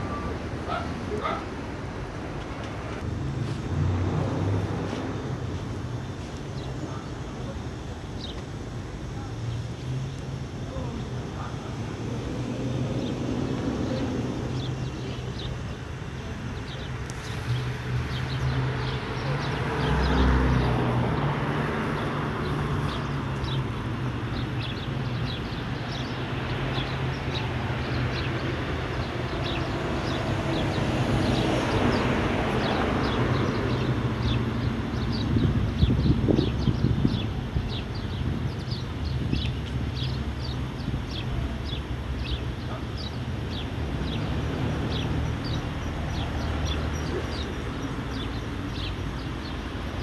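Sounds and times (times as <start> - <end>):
low engine hum: 0.0 - 7.6.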